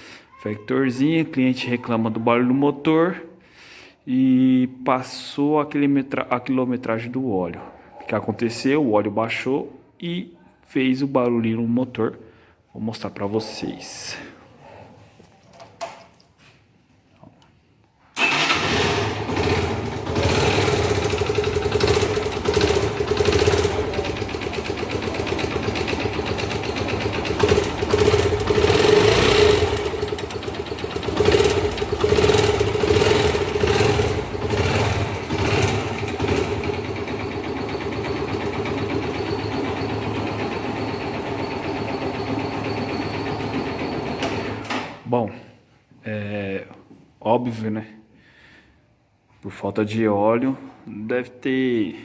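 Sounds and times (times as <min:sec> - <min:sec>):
internal engine noise: 0:18.2 - 0:44.7
motorcycle engine starting and running: 0:18.2 - 0:45.0.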